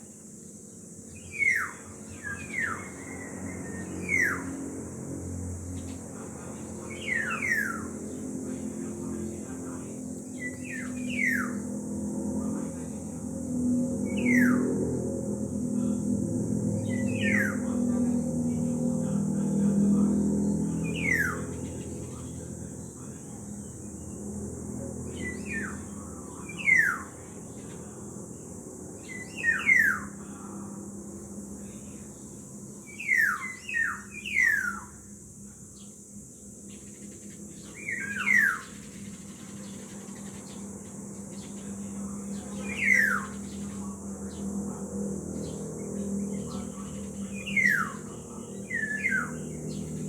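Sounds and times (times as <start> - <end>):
steady low hum: 0.0 - 50.0
oriole whistled calls: 7.0 - 7.9, 29.1 - 30.2, 32.9 - 35.0, 37.8 - 39.2, 42.6 - 43.6, 47.2 - 50.0.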